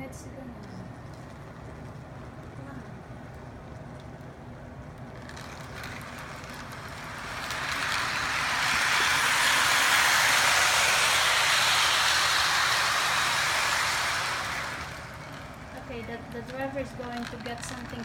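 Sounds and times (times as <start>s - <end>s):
toy train rolling on track: 5.0s - 18.0s.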